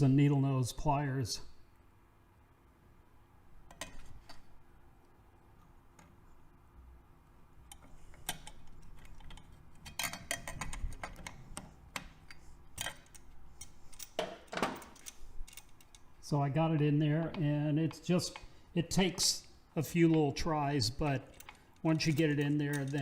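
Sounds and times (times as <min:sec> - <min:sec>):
pliers clicking on metal parts: 0:07.6 - 0:16.2, 0:21.2 - 0:23.0.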